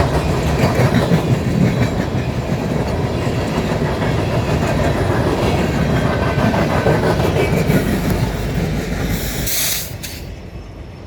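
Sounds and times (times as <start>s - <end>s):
train wheels clattering on rails: 0.0s - 11.0s
brief hiss: 9.2s - 10.3s.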